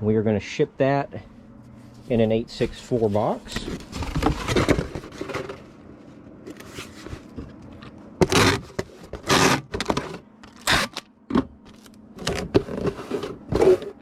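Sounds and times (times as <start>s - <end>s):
cardboard box scraping and crinkling: 2.5s - 5.7s, 6.5s - 7.4s, 8.2s - 10.2s.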